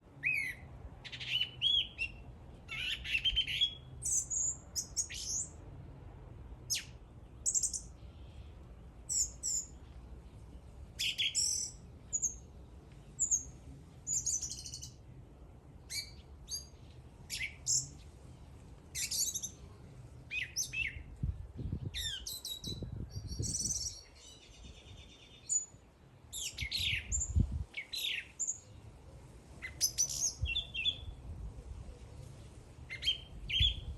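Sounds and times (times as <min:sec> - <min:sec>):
songbird chirping and whistling: 0:00.2 - 0:05.5, 0:06.7 - 0:08.0, 0:09.1 - 0:09.8, 0:11.0 - 0:12.4, 0:13.2 - 0:13.5, 0:14.1 - 0:15.0, 0:15.9 - 0:16.7, 0:17.3 - 0:18.1, 0:19.0 - 0:19.6, 0:20.3 - 0:21.1, 0:21.8 - 0:25.7, 0:26.3 - 0:28.7, 0:29.6 - 0:31.2, 0:32.9 - 0:33.9.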